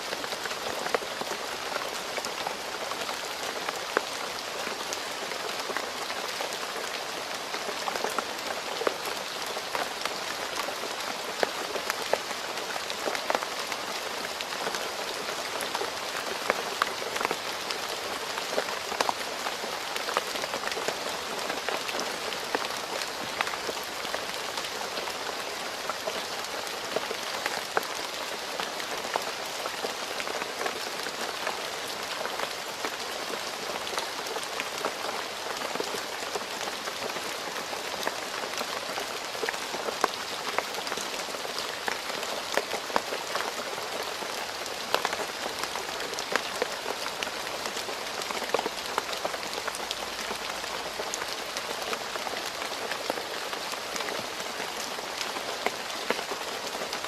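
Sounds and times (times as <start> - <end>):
rain falling on road: 0.0 - 57.0.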